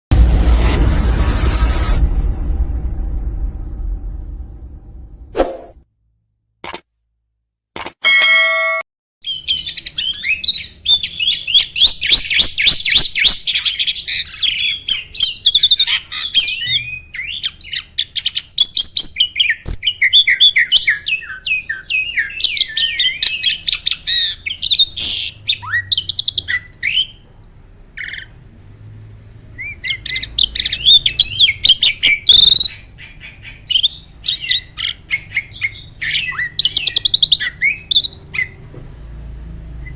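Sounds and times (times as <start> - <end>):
brief tone: 8.0 - 8.8
starling singing: 9.2 - 27.2, 29.6 - 38.6.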